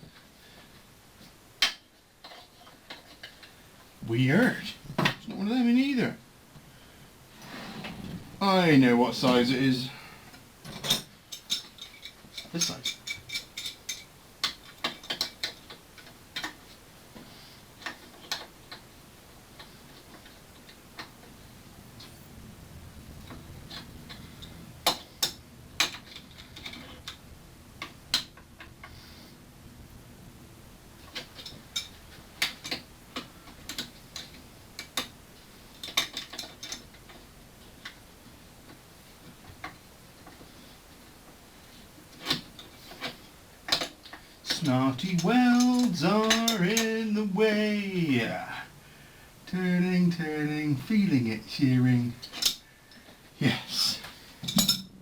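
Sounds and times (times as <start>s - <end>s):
metal hand tools clinking: 44.5s - 47.2s.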